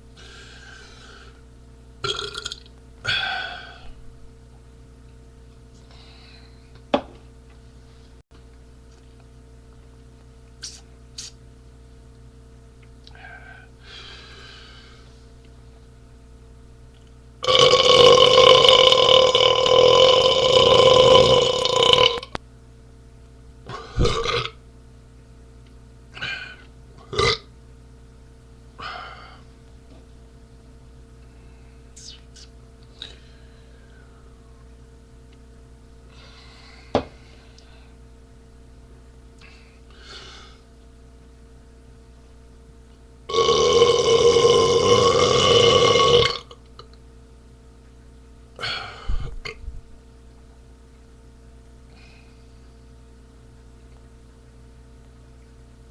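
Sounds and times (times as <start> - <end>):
man burping: 2.0 - 3.9, 17.4 - 22.3, 23.7 - 24.6, 26.2 - 27.5, 43.3 - 46.6.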